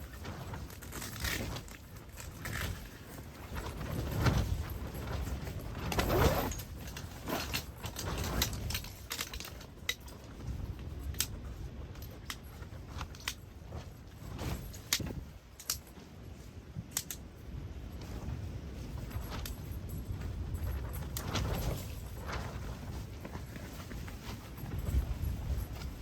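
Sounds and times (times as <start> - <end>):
clinks and rattles of small objects: 0.7 - 11.3.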